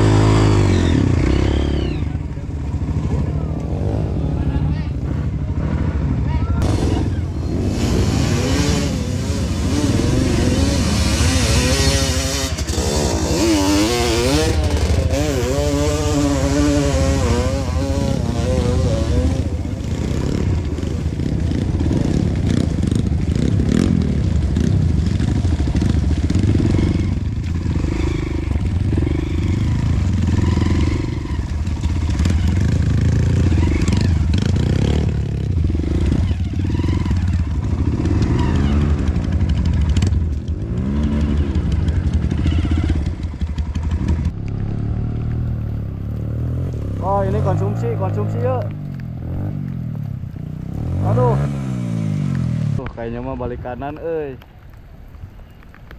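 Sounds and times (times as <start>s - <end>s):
motorcycle engine revving: 0.0s - 54.0s
motorcycle clatter: 9.6s - 53.0s.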